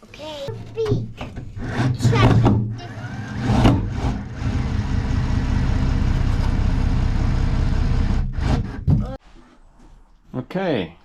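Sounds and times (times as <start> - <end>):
motor running: 1.6 - 8.8.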